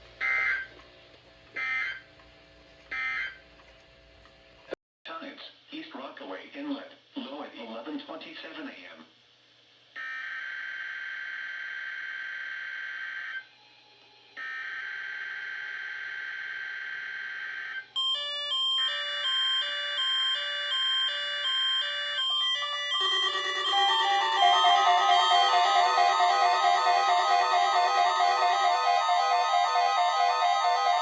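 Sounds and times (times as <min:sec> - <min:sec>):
rapid alarm beeping: 0:18.0 - 0:31.0
fast electronic chime melody: 0:19.6 - 0:31.0
steady electronic alert tone: 0:21.8 - 0:31.0.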